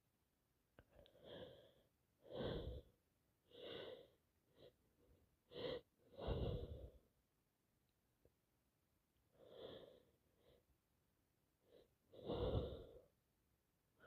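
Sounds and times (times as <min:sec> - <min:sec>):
person breathing heavily: 0:00.9 - 0:07.1, 0:09.3 - 0:10.7, 0:11.6 - 0:13.2.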